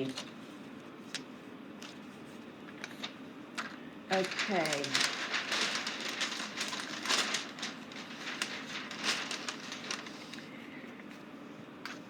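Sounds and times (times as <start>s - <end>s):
paper rustling and scraping: 4.1s - 10.6s.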